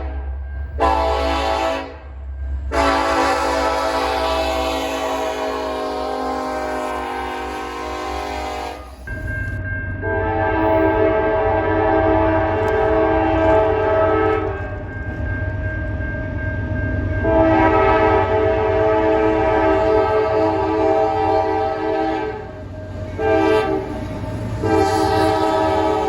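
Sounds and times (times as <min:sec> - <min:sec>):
locomotive air horns: 0:00.8 - 0:02.0, 0:02.7 - 0:09.1, 0:10.1 - 0:14.6, 0:17.2 - 0:22.5, 0:23.1 - 0:26.0.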